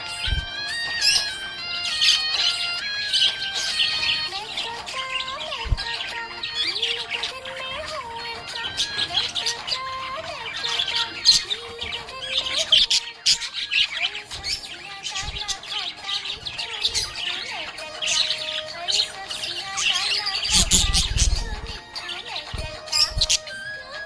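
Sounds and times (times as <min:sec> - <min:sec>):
background music melody: 0:00.0 - 0:24.0
budgerigars chirping: 0:00.0 - 0:24.0.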